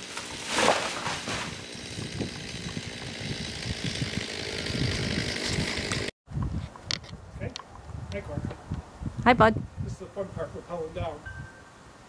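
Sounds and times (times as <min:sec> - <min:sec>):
chainsaw running: 0:00.0 - 0:06.1.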